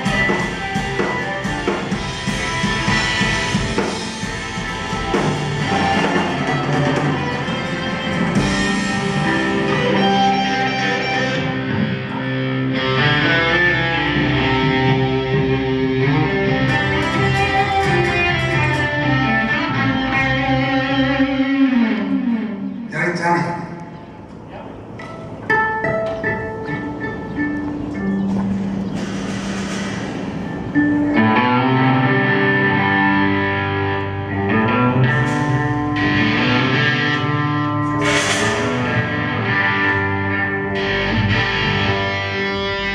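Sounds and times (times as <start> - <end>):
guitar chords: 0.0 - 22.9, 23.6 - 42.9
live band playing: 0.0 - 42.9
cymbal hiss bursts: 38.0 - 39.3.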